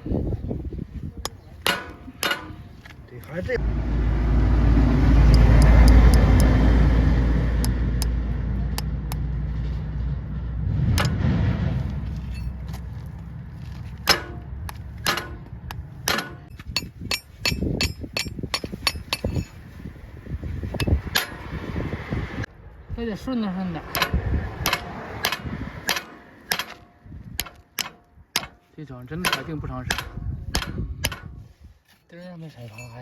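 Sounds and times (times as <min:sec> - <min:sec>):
sharp irregular knocks and clicks: 0:01.6 - 0:03.4, 0:05.3 - 0:06.5, 0:14.0 - 0:19.3, 0:23.9 - 0:31.4
low rumble: 0:02.1 - 0:25.9.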